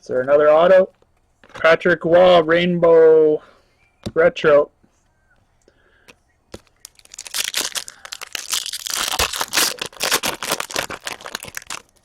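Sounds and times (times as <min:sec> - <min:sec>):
card pack wrapper tearing and crinkling: 0:06.5 - 0:12.0.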